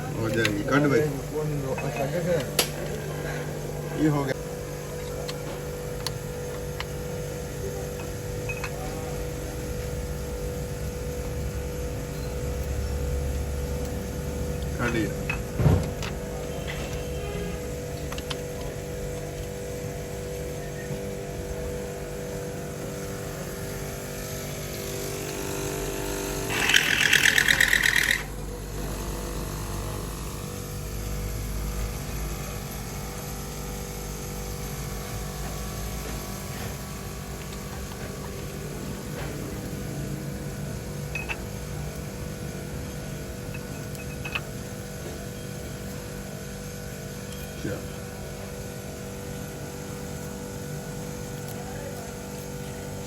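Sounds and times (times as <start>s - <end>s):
loud rattling buzz: 21.1s - 47.3s.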